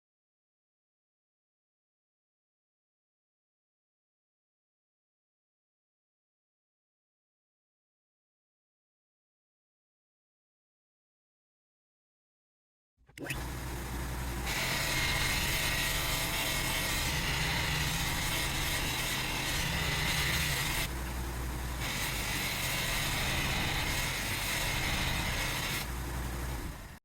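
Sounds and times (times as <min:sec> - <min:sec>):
electric power tool whining: 0:13.2 - 0:27.0.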